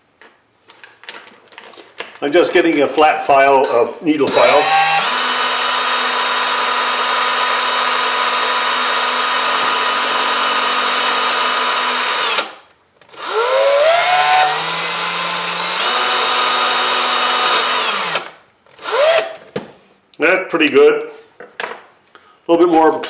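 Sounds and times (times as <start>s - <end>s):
electric drill motor whine: 4.3s - 19.4s.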